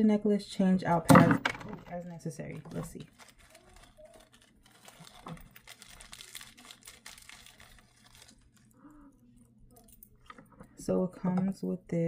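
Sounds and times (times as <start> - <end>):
packaging crinkling and rustling: 1.9 - 10.4.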